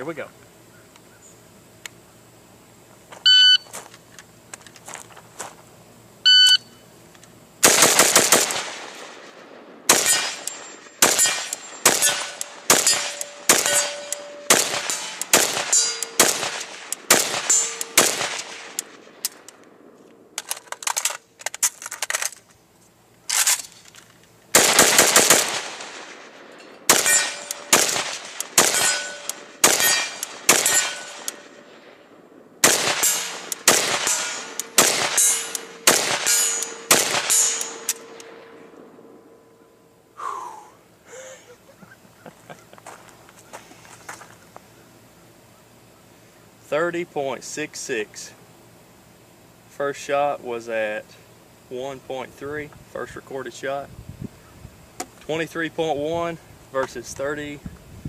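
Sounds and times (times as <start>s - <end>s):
shot timer beeps: 3.3s - 3.7s, 6.3s - 6.8s
rifle firing single shots: 7.6s - 21.2s, 24.5s - 39.1s
faint ringing tone: 37.6s - 40.8s.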